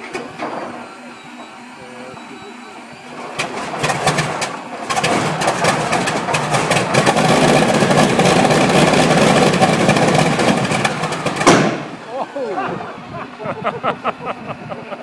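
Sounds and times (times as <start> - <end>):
radial aircraft engine running roughly: 0.0 - 15.0.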